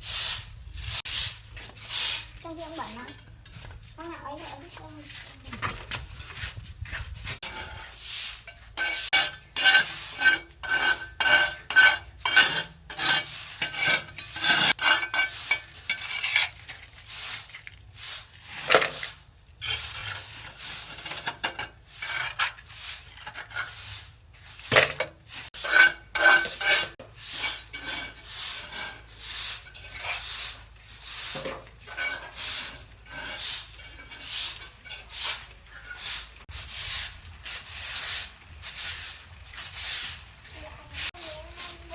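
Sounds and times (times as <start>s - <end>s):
metal tool scraping and clinking: 7.3s - 17.8s, 18.6s - 36.4s.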